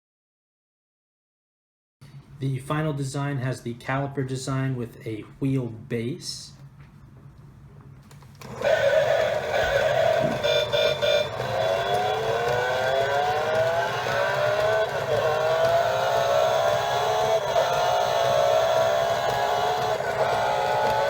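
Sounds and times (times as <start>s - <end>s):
alarm clock engine revving sound: 8.4s - 21.0s.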